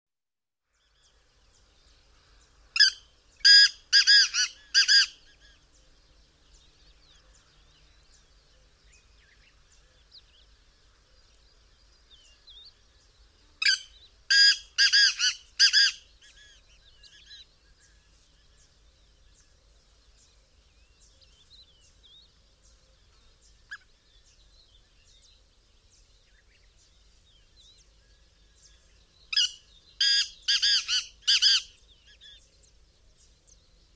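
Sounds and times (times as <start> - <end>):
faint bird chirps: 0.7 - 33.9
francolin calling: 2.0 - 25.4, 26.0 - 32.8.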